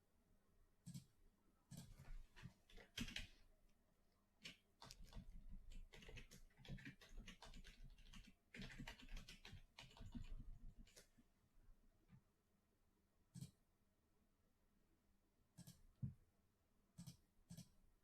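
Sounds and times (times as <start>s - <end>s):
typing on computer keyboard: 2.6s - 3.3s, 4.4s - 11.1s.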